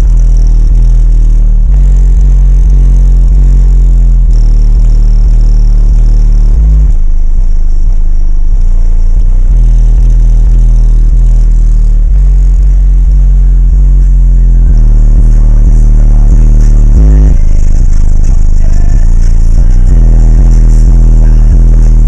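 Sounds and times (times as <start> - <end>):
distorted deep bass notes: 0.0 - 22.0.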